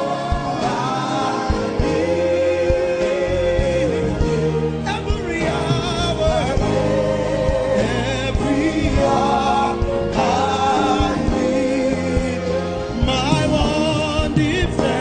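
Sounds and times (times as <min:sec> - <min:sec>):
keyboard chords: 0:00.0 - 0:15.0
voices singing with vibrato: 0:00.0 - 0:15.0
steady bass beat: 0:05.2 - 0:15.0.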